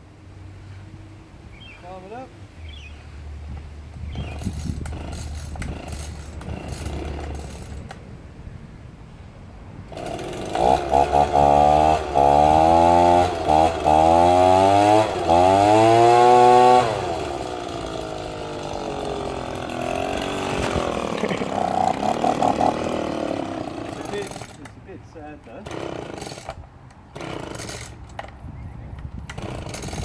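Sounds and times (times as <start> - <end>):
leaf blower engine running: 4.2 - 7.8, 9.9 - 24.8, 29.3 - 30.0.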